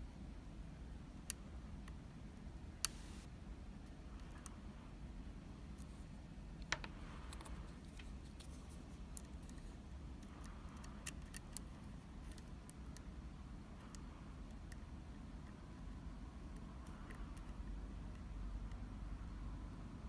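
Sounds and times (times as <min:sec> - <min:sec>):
low steady background hum: 0:00.0 - 0:20.0
lock picks ticking and scraping: 0:10.2 - 0:13.1.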